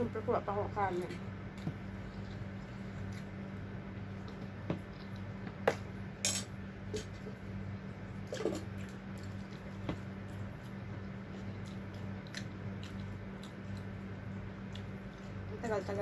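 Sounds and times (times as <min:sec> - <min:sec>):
steady low hum: 0:00.0 - 0:16.0
utensils clinking on dishes: 0:06.2 - 0:06.6.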